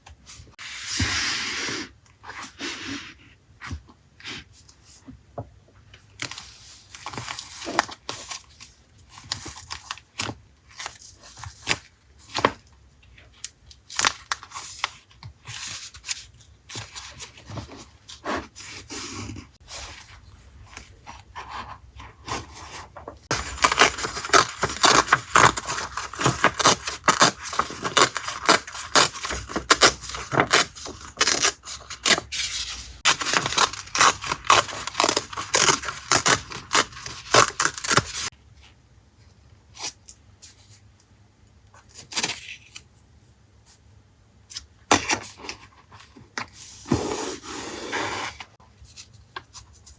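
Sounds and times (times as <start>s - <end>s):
paper scraping and rubbing: 46.7s - 48.6s.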